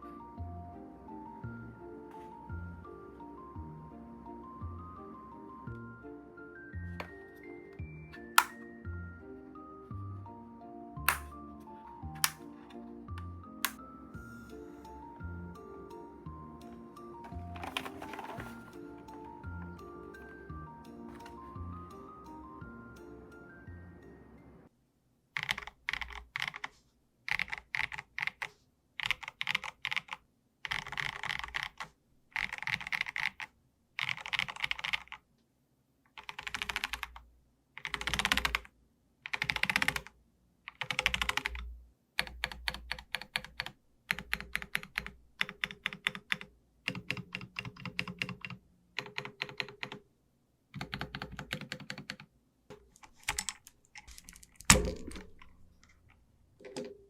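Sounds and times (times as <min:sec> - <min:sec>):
mechanical keyboard typing: 0:08.2 - 0:08.6, 0:11.0 - 0:11.4, 0:12.1 - 0:12.6, 0:13.6 - 0:13.8, 0:17.3 - 0:19.3, 0:25.4 - 0:26.7, 0:27.3 - 0:35.2, 0:36.1 - 0:37.2, 0:37.8 - 0:38.7, 0:39.3 - 0:40.1, 0:40.7 - 0:50.0, 0:50.8 - 0:52.3, 0:53.0 - 0:55.6.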